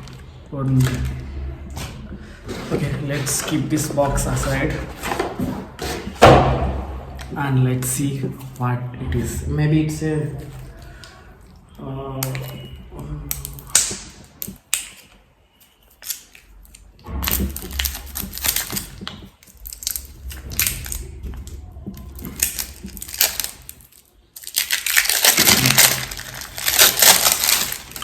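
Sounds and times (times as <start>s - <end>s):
packaging rustling and tearing: 15.8s - 28.0s.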